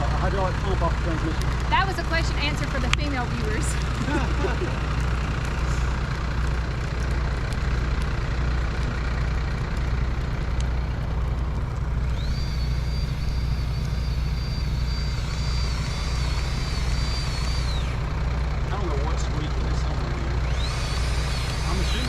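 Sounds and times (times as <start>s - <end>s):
truck engine idling: 0.0s - 22.0s
high steady squeak: 12.0s - 18.1s, 20.4s - 22.0s.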